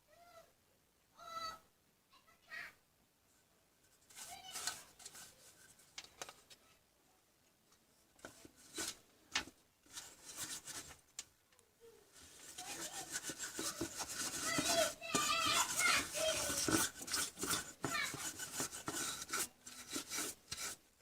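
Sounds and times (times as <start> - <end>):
scraping and rubbing: 3.9 - 6.5, 8.2 - 11.0, 12.1 - 20.9.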